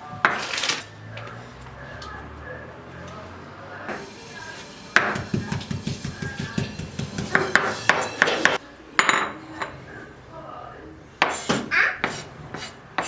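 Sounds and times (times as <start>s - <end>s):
kitchen utensils knocking and clinking: 3.9s - 9.7s.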